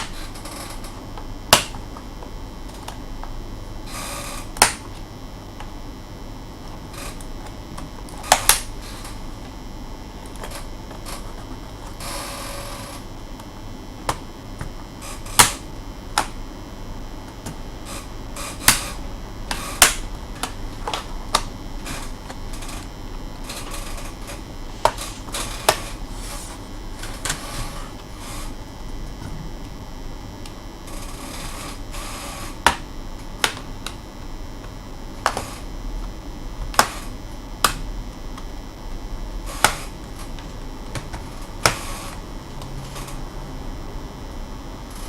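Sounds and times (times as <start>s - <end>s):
steady background hiss: 0.0s - 45.0s.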